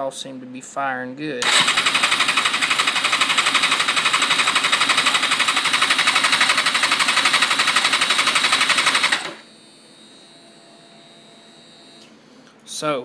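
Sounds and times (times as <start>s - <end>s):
starter cranking engine: 1.4s - 9.4s.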